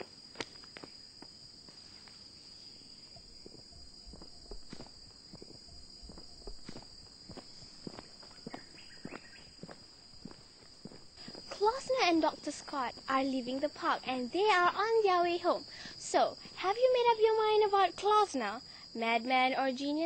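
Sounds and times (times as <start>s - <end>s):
insects droning: 0.0s - 20.0s
footsteps walking away: 3.2s - 12.0s.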